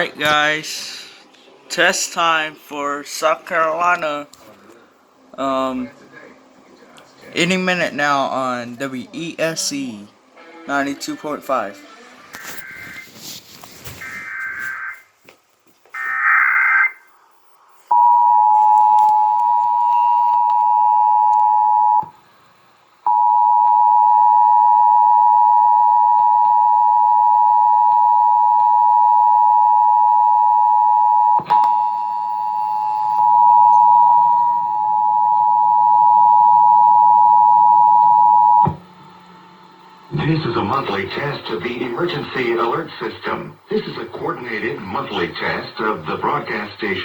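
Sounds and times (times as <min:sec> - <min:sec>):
digital data screech: 0:12.3 - 0:13.3, 0:13.9 - 0:15.0
two-tone attention signal: 0:12.4 - 0:13.2.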